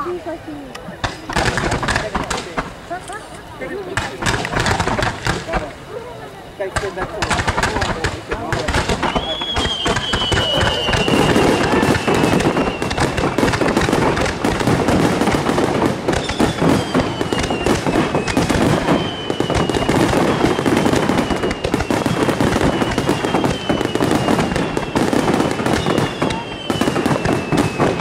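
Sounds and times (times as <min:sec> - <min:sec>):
fireworks bangs and crackling: 0:00.0 - 0:28.0
fireworks whistles falling in pitch: 0:06.8 - 0:28.0.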